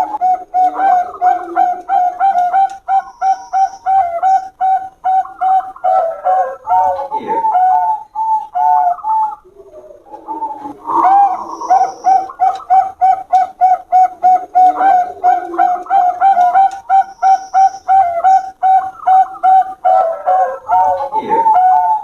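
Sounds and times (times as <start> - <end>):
doves cooing: 0.0 - 22.0.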